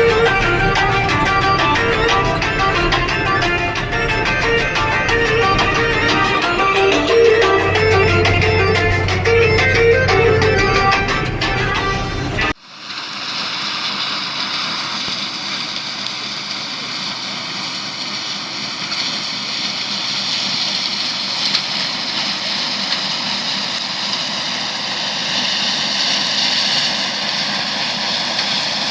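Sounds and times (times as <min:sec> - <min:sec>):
faint machine whine: 0:00.0 - 0:28.8
combine harvester running: 0:00.0 - 0:28.9.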